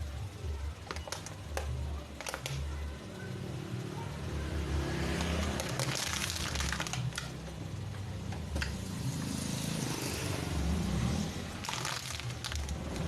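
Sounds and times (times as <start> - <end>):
car engine running: 0.0 - 13.0
sharp crackles: 11.6 - 13.0.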